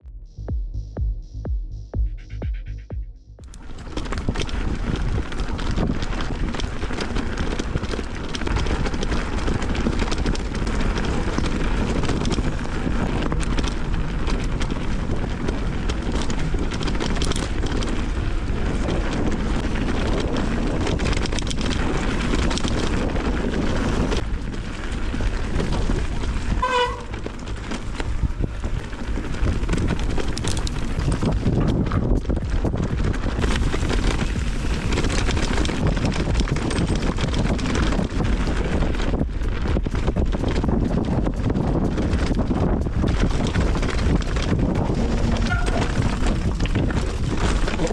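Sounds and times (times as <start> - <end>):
road and tyre noise: 3.4 - 47.9
wind buffeting microphone: 3.5 - 47.9.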